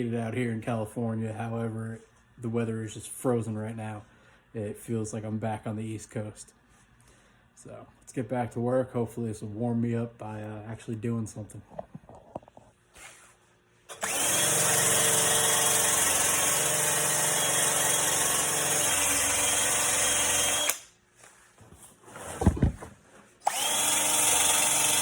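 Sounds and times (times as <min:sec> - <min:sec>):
thump: 0:22.3 - 0:23.0
power grinder on metal: 0:23.5 - 0:25.0.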